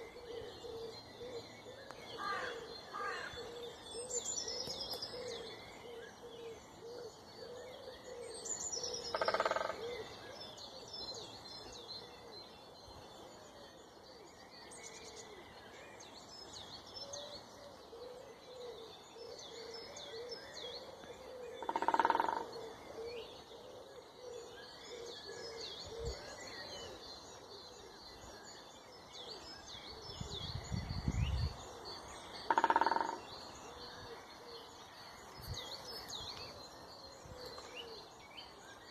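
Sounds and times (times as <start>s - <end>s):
birds chirping and singing: 0.0s - 38.9s
woodpecker drumming on wood: 9.1s - 9.8s, 21.6s - 22.5s, 32.5s - 33.2s.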